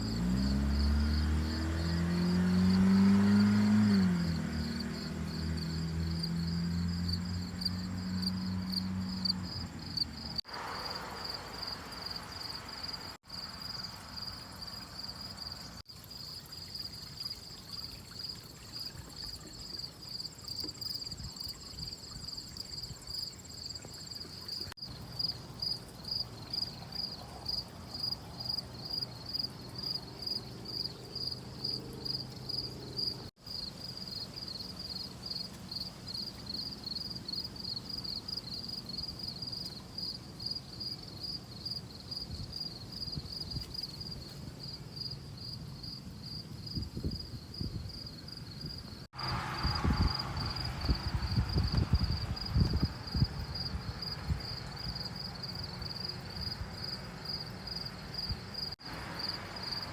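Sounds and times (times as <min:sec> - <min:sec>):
insects trilling: 0:00.0 - 0:59.9
higher insect trill: 0:04.4 - 0:43.5.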